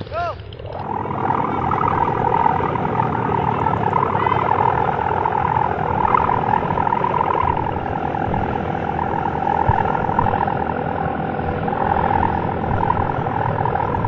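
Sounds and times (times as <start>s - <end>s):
kite hummer droning in wind: 0.0s - 14.0s.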